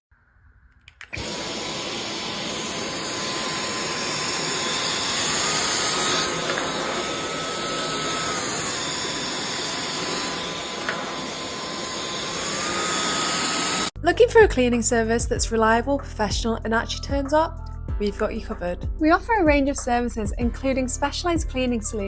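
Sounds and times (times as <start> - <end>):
vacuum cleaner running: 1.0 - 14.0.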